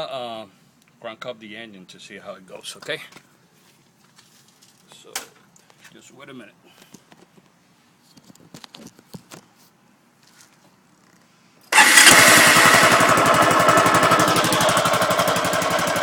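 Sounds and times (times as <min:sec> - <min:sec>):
scooter engine starting and running: 0:11.7 - 0:16.0.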